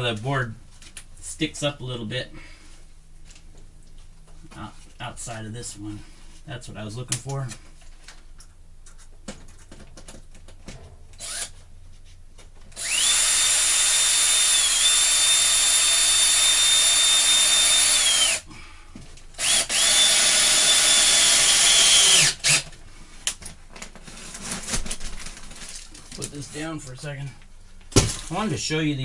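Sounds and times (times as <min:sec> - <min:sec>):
power drill driving screws: 0:11.2 - 0:11.5, 0:12.8 - 0:18.4, 0:19.4 - 0:22.7.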